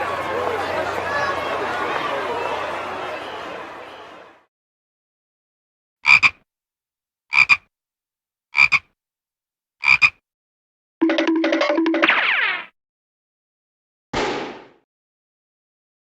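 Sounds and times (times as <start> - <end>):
frog croaking: 6.0 - 6.4, 7.3 - 7.7, 8.6 - 8.9, 9.8 - 10.2
pulsing cartoon sound effect: 11.0 - 12.7.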